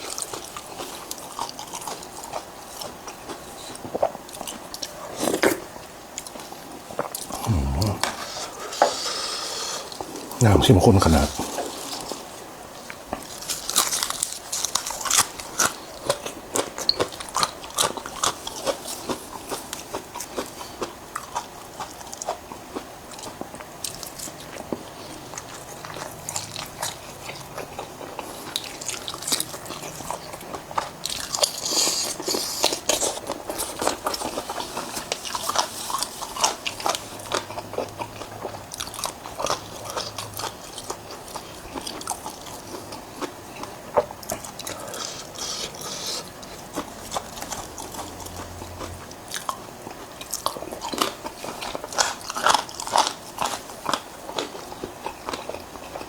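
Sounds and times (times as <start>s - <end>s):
crunchy bites and wet chewing: 13.2s - 20.5s, 50.2s - 56.0s.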